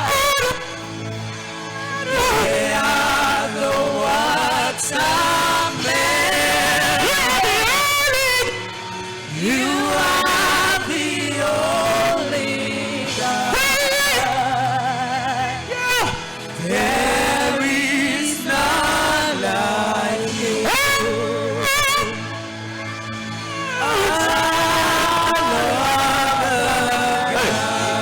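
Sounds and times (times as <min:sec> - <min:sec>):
band accompaniment: 0:00.0 - 0:28.0
person singing with vibrato: 0:00.0 - 0:28.0.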